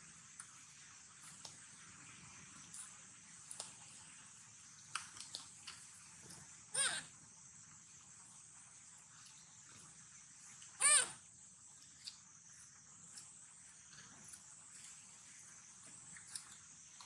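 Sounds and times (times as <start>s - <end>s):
insect chirring: 0.0s - 17.0s
baby monkey crying: 6.7s - 7.1s, 10.8s - 11.2s.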